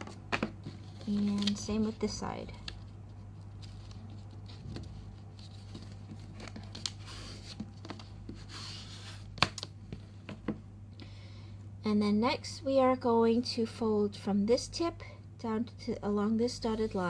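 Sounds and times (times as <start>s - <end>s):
paper rustling and crinkling: 0.0s - 9.7s
steady low hum: 0.0s - 17.0s.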